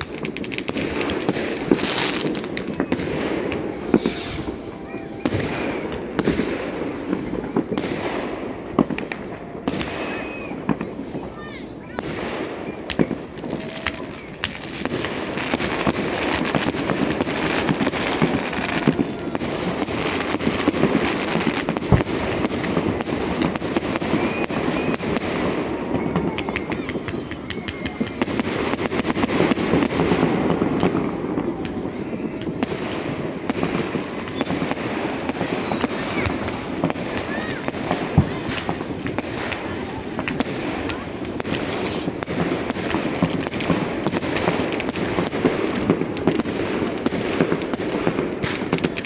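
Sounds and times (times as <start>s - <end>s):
sharp firework bang: 0.0s - 10.8s, 21.6s - 47.2s
fireworks crackling: 0.0s - 49.0s.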